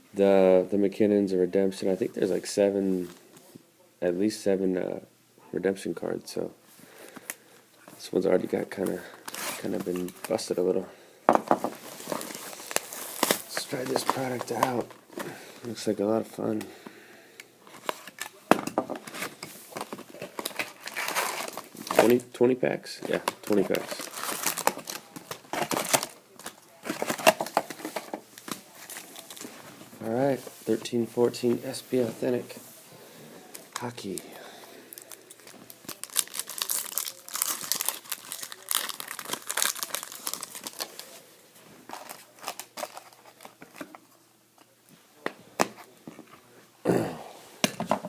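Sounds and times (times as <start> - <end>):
foil wrappers crinkling: 11.7 - 15.9, 19.0 - 22.2, 23.0 - 29.7, 33.5 - 44.0.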